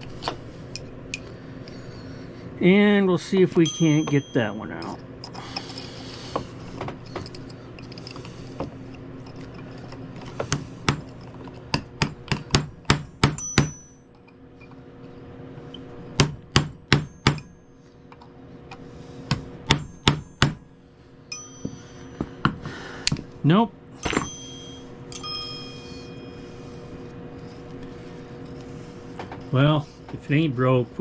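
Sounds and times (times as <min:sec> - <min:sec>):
steady low hum: 0:00.0 - 0:31.0
hammer tapping on metal: 0:11.7 - 0:14.0, 0:16.2 - 0:17.5, 0:19.3 - 0:20.6, 0:21.3 - 0:23.2.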